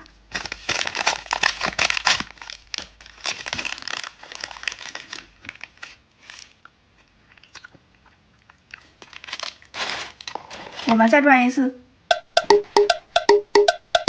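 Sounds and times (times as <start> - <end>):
plastic wrapper crinkling: 0.1 - 7.8, 8.7 - 11.0.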